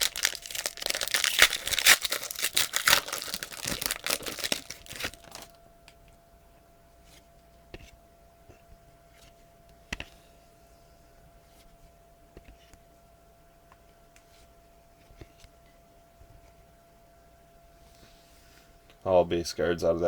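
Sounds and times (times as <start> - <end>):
plastic wrapper tearing and crinkling: 0.0 - 5.6.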